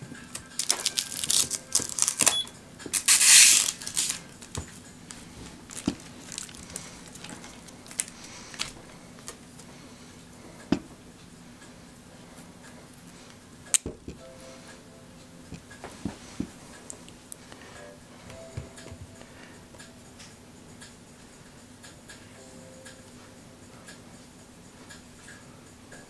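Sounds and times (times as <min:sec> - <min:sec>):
plastic packaging crinkling: 0:00.2 - 0:09.4.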